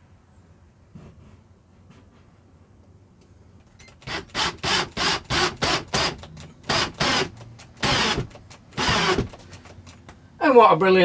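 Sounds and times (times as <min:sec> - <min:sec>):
cordless drill short bursts: 0:03.8 - 0:09.5.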